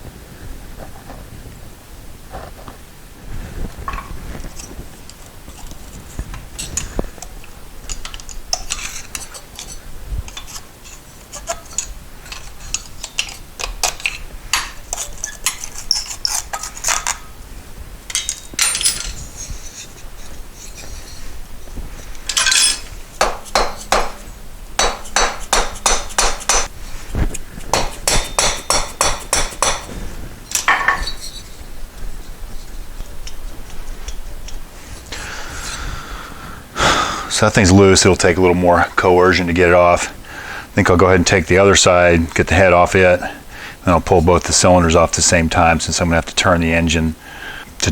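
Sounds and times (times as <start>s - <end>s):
metal hand tools clinking: 18.1s - 19.9s, 22.2s - 26.7s, 27.7s - 29.9s, 30.5s - 31.5s.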